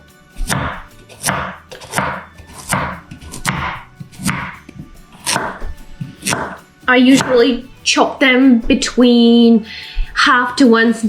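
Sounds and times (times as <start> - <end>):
knife chopping on a cutting board: 0.4 - 7.7.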